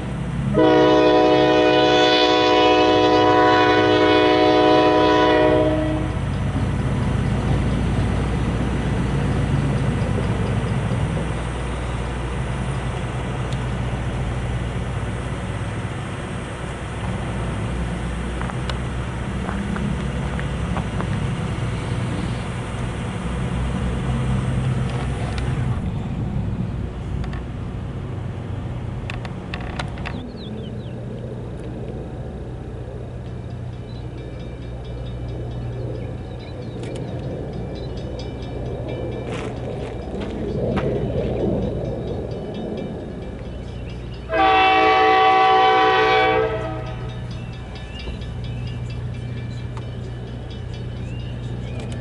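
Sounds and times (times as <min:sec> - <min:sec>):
locomotive engine rumbling: 0:00.0 - 0:52.0
train cars rolling over rails: 0:00.0 - 0:52.0
locomotive air horn blast: 0:00.5 - 0:06.3, 0:44.3 - 0:47.2.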